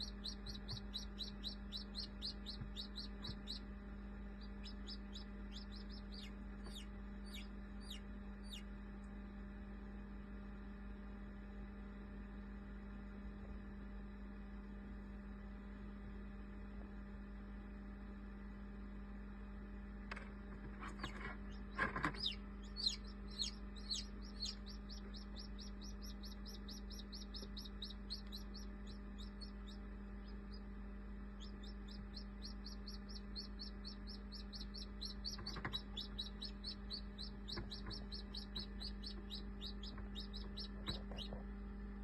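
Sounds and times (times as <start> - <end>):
chick peeping: 0.0 - 3.7, 4.3 - 8.7, 20.9 - 30.7, 31.3 - 41.4.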